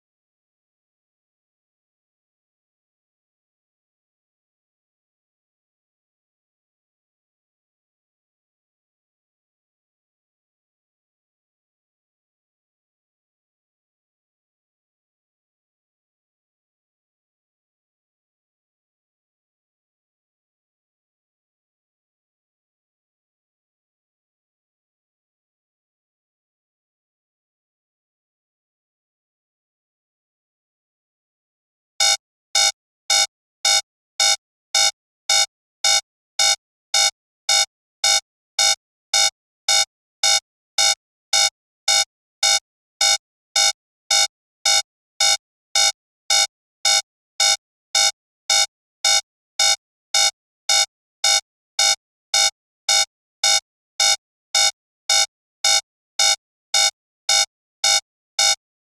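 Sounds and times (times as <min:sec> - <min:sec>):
alarm clock beeping: 0:32.0 - 0:58.6.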